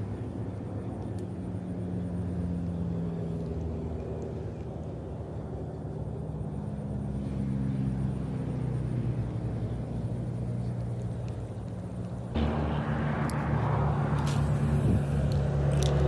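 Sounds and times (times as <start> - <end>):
motor engine humming: 1.8 - 16.0
loud rushing noise: 12.4 - 15.7.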